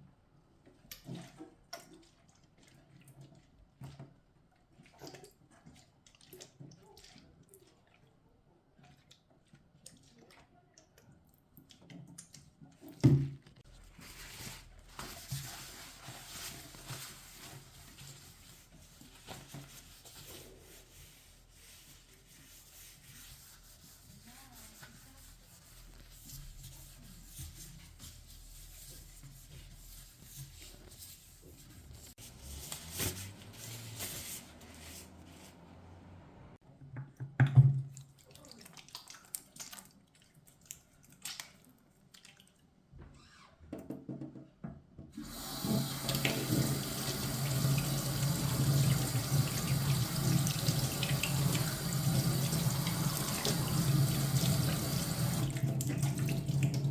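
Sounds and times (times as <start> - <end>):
rubbing sounds: 13.7 - 36.0.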